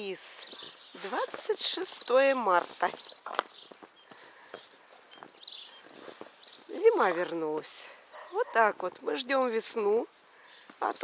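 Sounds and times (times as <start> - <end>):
footsteps crunching in snow: 0.0 - 7.7.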